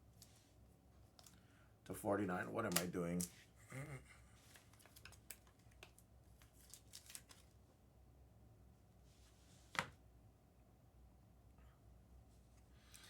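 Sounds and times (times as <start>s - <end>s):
trading cards being handled: 2.6s - 3.4s.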